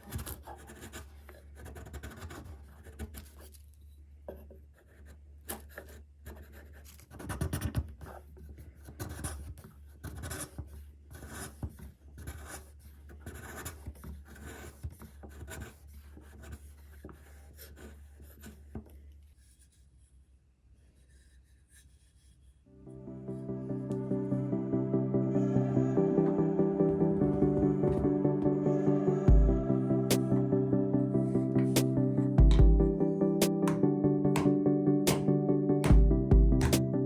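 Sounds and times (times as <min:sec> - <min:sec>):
low hum: 0:22.7 - 0:37.0.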